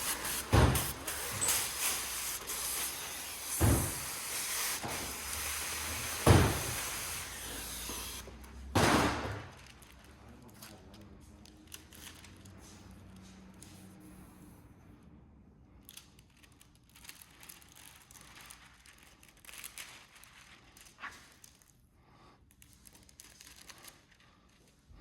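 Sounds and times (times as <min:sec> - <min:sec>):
steady air hiss: 0:00.0 - 0:08.3.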